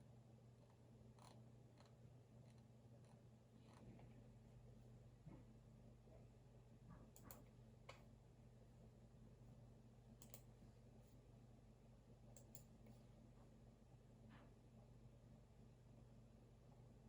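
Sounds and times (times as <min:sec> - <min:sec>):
low steady hum: 0:00.0 - 0:17.0
faint computer clicks: 0:07.1 - 0:08.0, 0:10.2 - 0:10.5, 0:12.4 - 0:13.0.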